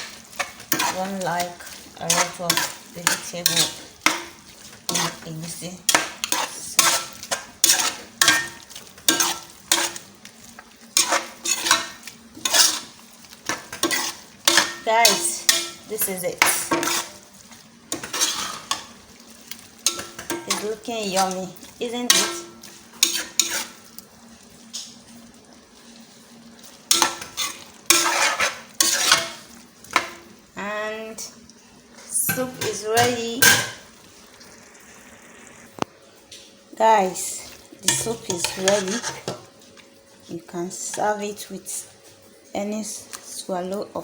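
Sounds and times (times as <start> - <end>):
spoon scraping a pot: 0.0 - 10.1, 10.9 - 17.2, 17.9 - 19.0, 19.8 - 23.8, 26.9 - 30.2, 37.8 - 39.4.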